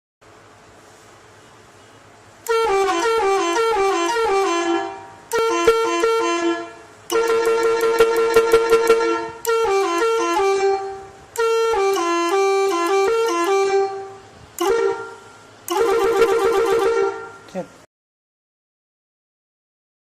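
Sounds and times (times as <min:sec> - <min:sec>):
multi-tone horn playing melodies: 0:02.4 - 0:17.5.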